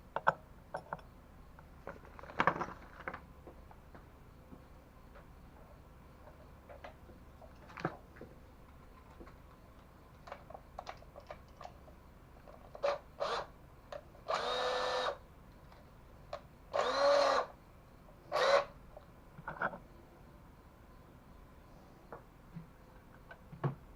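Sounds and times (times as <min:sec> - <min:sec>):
power drill whining: 0:12.8 - 0:13.5, 0:14.3 - 0:15.2, 0:16.7 - 0:17.5, 0:18.3 - 0:18.7.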